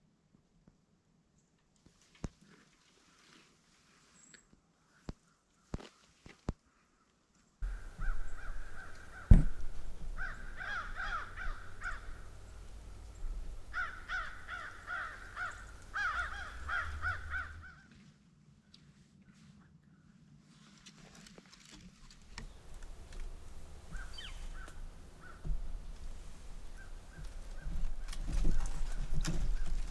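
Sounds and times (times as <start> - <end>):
sharp loud knock: 7.6 - 12.7
crows cawing: 7.6 - 17.8, 22.6 - 29.9
low rumble: 7.6 - 17.8.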